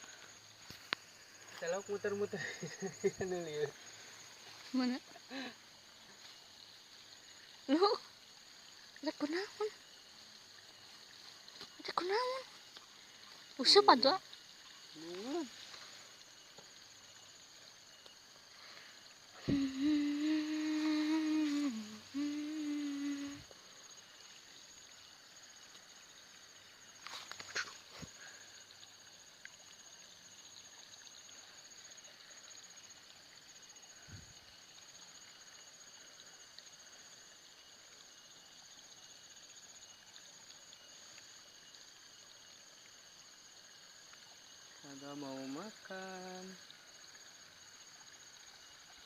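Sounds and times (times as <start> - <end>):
high insect chorus: 0.0 - 49.0
person humming: 19.4 - 23.5.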